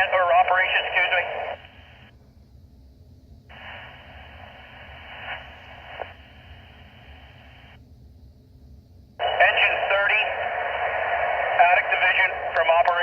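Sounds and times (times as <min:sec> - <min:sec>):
radio static hiss: 0:00.0 - 0:02.1, 0:03.5 - 0:07.8, 0:09.2 - 0:13.0
low steady hum: 0:00.0 - 0:13.0
faint radio clicks: 0:04.8 - 0:07.8, 0:10.3 - 0:13.0.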